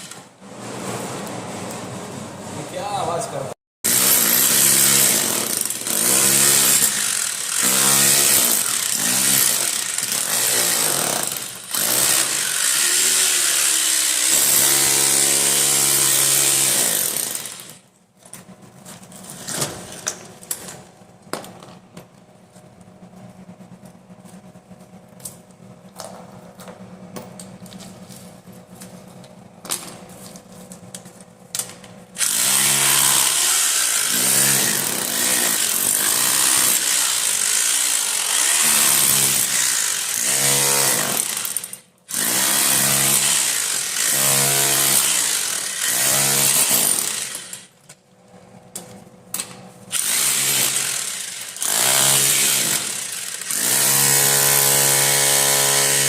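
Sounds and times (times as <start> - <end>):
hammer drill boring: 3.9 - 17.8, 32.2 - 47.7, 49.9 - 56.0.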